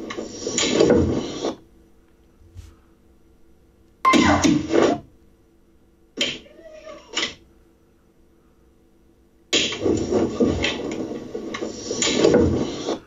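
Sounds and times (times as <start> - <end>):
dense scratchy noise: 4.2 - 5.1, 9.7 - 13.0.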